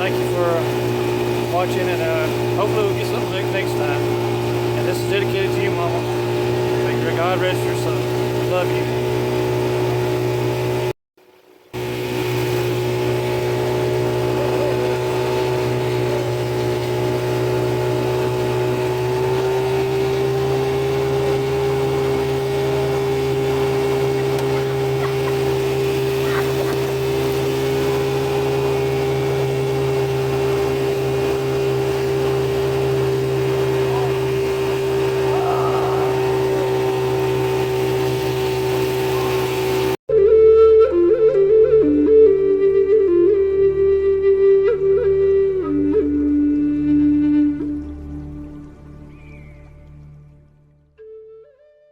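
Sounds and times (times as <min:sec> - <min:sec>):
boat motor running: 0:00.0 - 0:40.0, 0:40.9 - 0:51.2.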